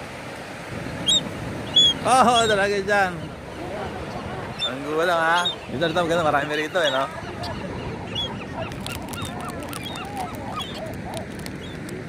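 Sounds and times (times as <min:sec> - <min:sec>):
flock of birds calling: 0:00.9 - 0:12.0.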